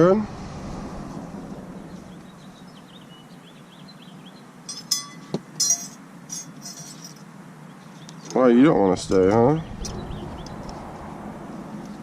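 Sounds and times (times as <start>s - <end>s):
light metallic clinks: 4.7s - 7.3s.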